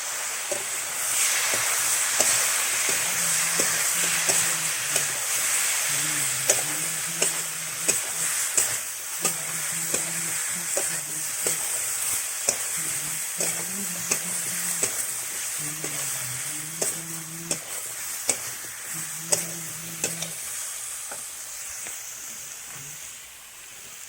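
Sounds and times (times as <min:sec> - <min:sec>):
vegetables sizzling in a pan: 0:00.0 - 0:24.0
spatula clicking against metal pan: 0:06.5 - 0:11.8, 0:13.4 - 0:15.1.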